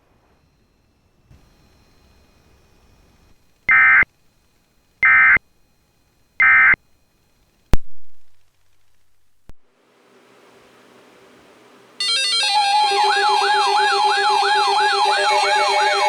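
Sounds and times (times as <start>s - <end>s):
warbling data tones: 3.7s - 4.1s.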